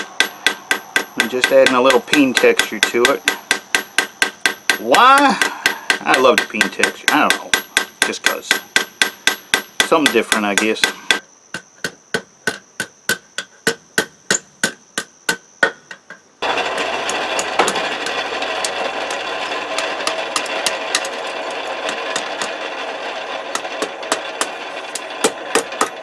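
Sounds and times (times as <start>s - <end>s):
hammer tapping steel: 0.0s - 16.2s, 17.0s - 22.8s, 23.5s - 26.0s
machine humming: 16.4s - 26.0s.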